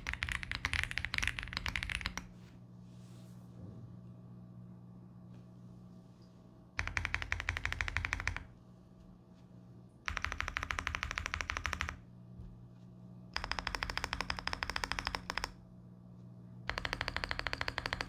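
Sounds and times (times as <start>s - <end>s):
mechanical keyboard typing: 0.0s - 2.3s, 6.8s - 8.5s, 10.1s - 12.0s, 13.4s - 15.6s, 16.7s - 18.0s.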